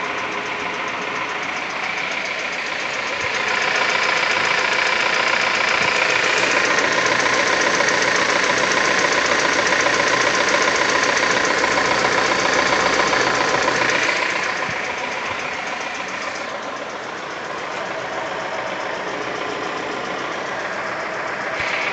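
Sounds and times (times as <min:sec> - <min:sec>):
knocking petrol engine running: 0:00.0 - 0:21.9.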